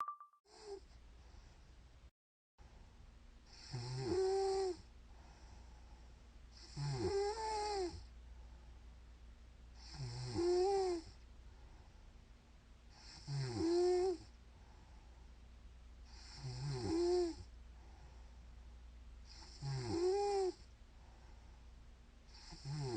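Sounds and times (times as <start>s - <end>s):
woman snoring: 3.5s - 4.9s, 6.6s - 8.1s, 9.8s - 11.2s, 13.0s - 14.4s, 16.1s - 17.5s, 19.3s - 20.6s, 22.3s - 22.9s.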